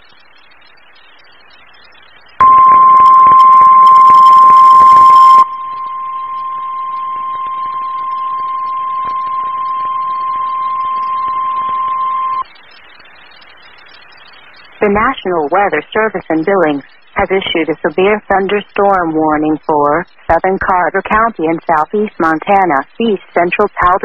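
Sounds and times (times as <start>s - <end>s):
faint radio hiss: 0.0s - 24.0s
steady warning alarm tone: 2.4s - 12.4s.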